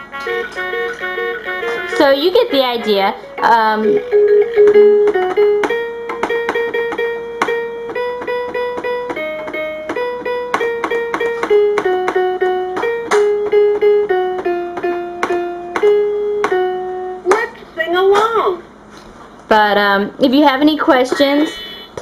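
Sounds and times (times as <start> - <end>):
toy playing electronic tune: 0.0 - 17.3.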